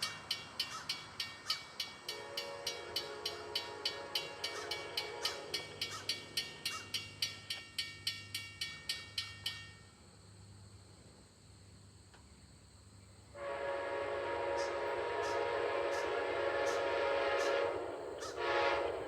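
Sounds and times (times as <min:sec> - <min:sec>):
crossing bell dinging: 0:00.0 - 0:10.0
locomotive air horn blast: 0:02.0 - 0:05.8, 0:13.4 - 0:19.0.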